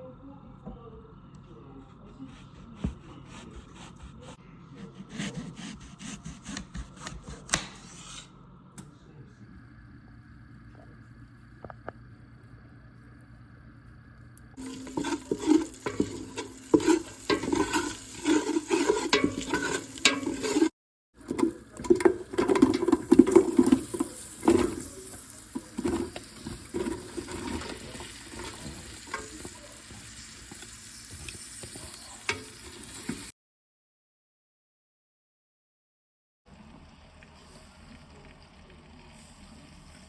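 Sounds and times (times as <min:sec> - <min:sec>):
ingredients stirred in a bowl: 0:14.6 - 0:33.3
scraping and knocking on bowl: 0:14.6 - 0:33.3.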